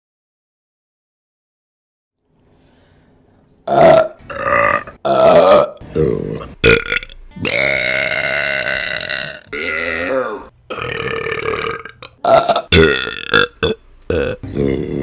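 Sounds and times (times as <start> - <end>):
woman burping loudly: 3.7 - 15.0.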